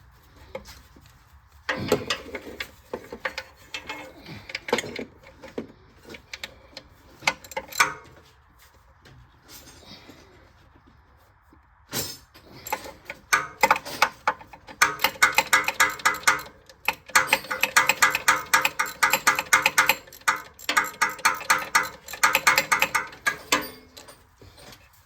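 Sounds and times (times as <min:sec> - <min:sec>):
hand ratchet clicking: 0:12.6 - 0:24.2.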